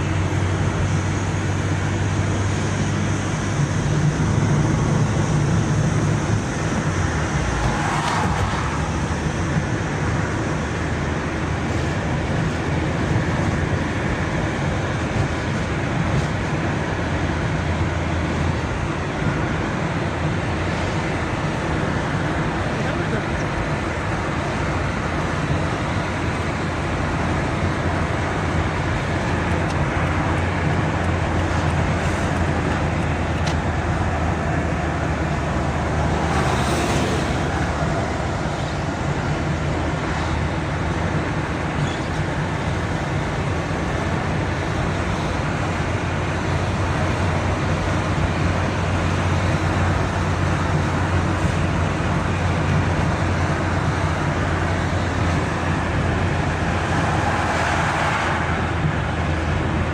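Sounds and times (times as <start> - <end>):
car driving road noise: 0.0 - 59.9
vehicle passing whoosh: 3.8 - 10.2, 33.8 - 38.6.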